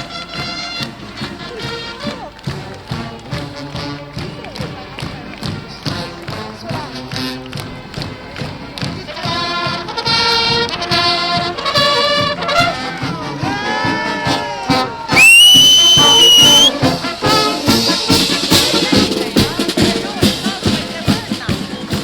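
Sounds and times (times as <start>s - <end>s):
brass band playing: 0.0s - 22.0s
shrill high brass note: 14.7s - 17.8s.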